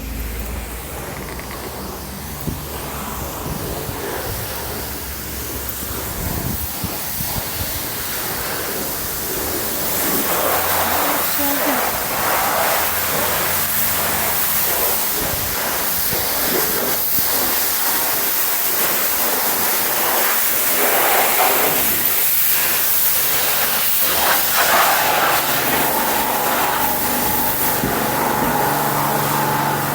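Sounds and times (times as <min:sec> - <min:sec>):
high-pressure water jet spraying: 0:00.0 - 0:29.9.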